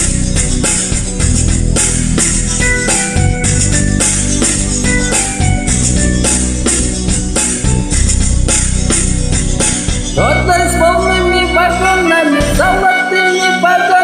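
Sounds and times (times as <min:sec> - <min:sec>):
instrumental rock drums and guitar: 0:00.0 - 0:10.2.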